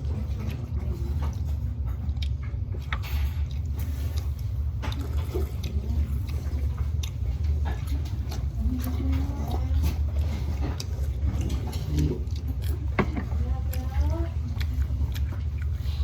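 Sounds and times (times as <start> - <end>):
noodles chewed and slurped: 0.0 - 16.0
steady low hum: 0.0 - 16.0.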